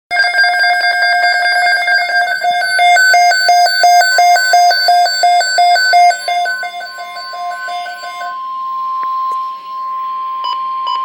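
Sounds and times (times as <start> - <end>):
steady alert tone: 1.3 - 8.4
two-pitch electronic alert beeping: 1.3 - 8.4.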